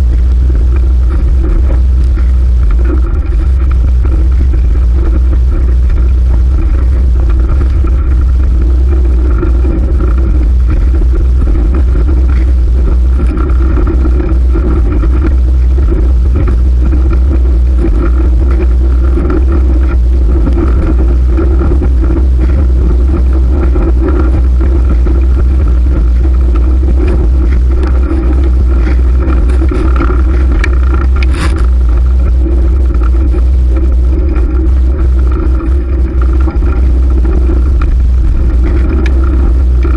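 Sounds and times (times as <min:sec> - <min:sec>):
wind and road noise: 0:00.0 - 0:39.9
bicycle click: 0:28.8 - 0:31.7.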